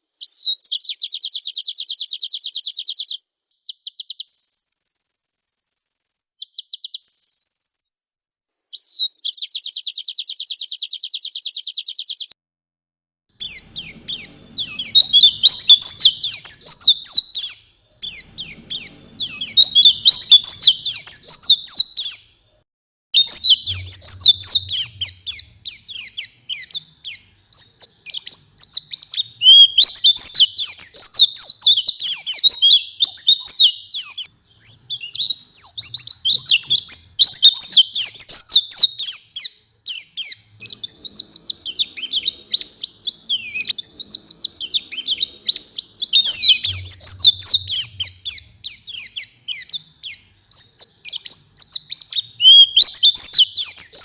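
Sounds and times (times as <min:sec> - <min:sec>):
bird twittering song: 0:00.2 - 0:07.9, 0:08.7 - 0:12.4, 0:13.4 - 0:22.5, 0:23.2 - 0:54.0.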